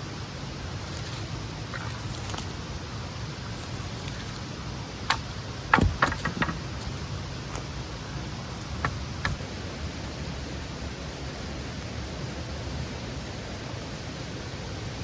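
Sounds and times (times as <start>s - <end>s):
small stream rushing: 0.0s - 15.0s
sharp knocks and clicks: 5.1s - 7.0s, 8.6s - 9.4s.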